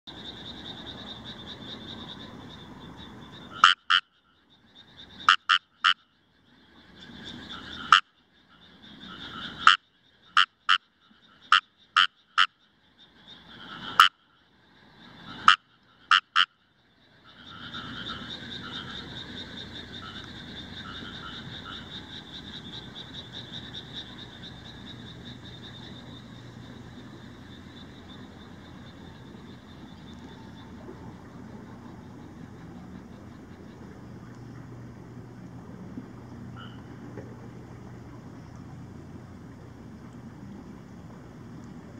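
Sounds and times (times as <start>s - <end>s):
chorus of frogs: 0.1s - 41.9s
frog croaking loudly: 3.3s - 4.2s, 5.0s - 6.1s, 7.0s - 12.6s, 13.4s - 14.3s, 15.2s - 16.6s, 17.2s - 30.8s, 36.6s - 36.9s.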